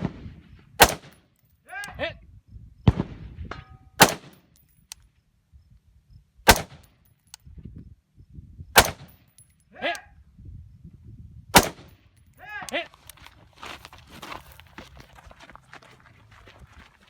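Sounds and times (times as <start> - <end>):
rifle shots: 0.8 - 1.2, 4.0 - 4.5, 6.5 - 6.9, 8.8 - 9.2, 11.6 - 12.0.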